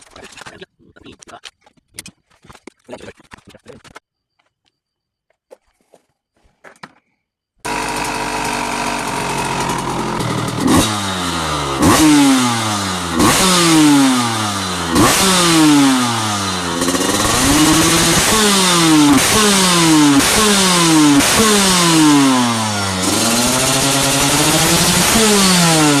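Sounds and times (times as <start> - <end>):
two-stroke motorcycle engine revving: 7.6 - 26.0.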